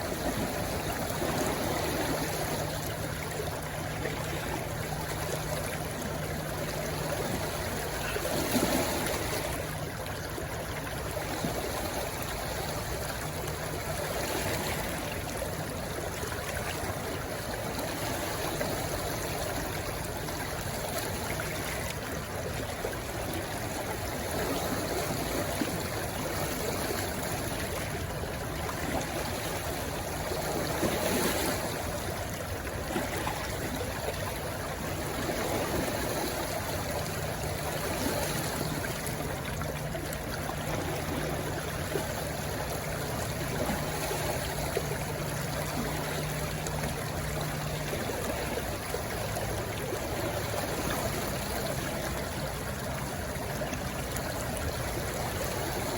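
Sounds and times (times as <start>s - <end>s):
stream rushing and gurgling: 0.0s - 55.9s.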